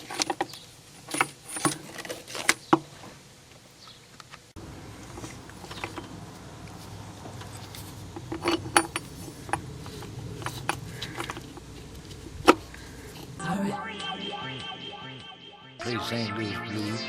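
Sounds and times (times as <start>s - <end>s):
metal tools clicking and clinking: 0.0s - 2.6s, 7.4s - 13.3s.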